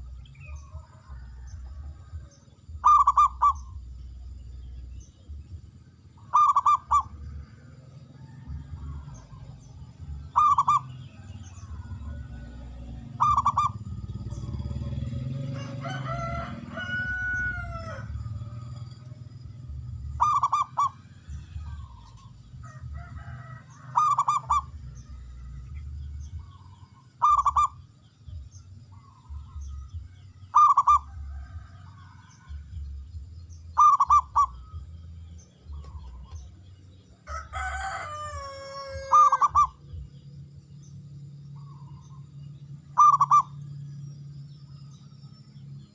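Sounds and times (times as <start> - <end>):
dove cooing: 0.0 - 4.4, 6.1 - 32.8, 33.8 - 34.9, 37.2 - 40.1, 41.6 - 43.6
low background rumble: 0.0 - 45.9
bird pitch-falling calls: 2.8 - 3.8, 6.2 - 7.3, 8.8 - 12.1, 13.1 - 15.0, 20.2 - 22.4, 23.7 - 25.8, 26.4 - 27.9, 28.9 - 32.6, 33.7 - 34.9, 37.3 - 39.9, 42.9 - 43.6.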